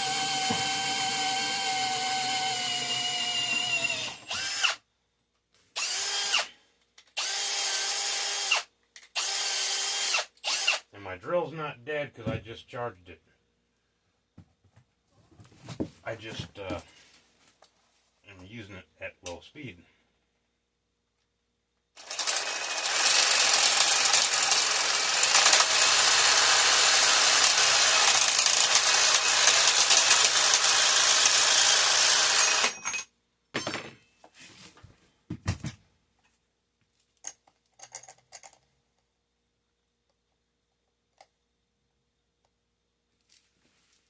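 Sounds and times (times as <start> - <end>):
cordless drill drilling metal: 0.0 - 4.8, 5.8 - 6.5, 7.2 - 10.9, 22.0 - 32.9.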